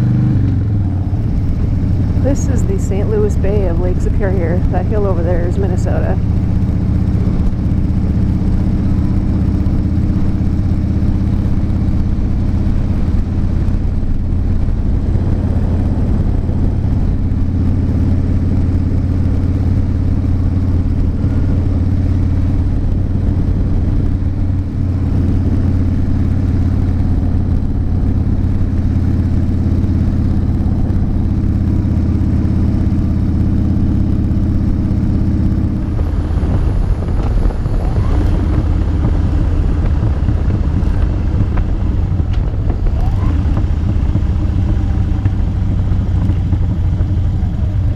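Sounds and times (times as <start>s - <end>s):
motorcycle engine cruising: 0.0s - 47.9s
road and wind noise: 0.0s - 47.9s.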